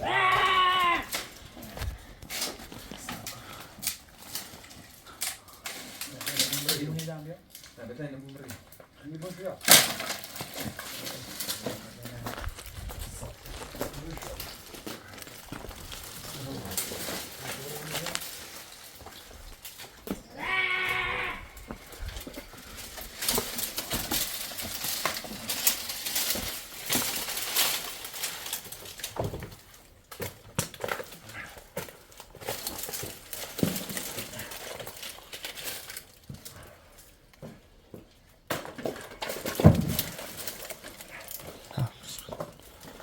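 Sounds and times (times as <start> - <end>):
objects knocking and clattering: 37.4 - 43.0.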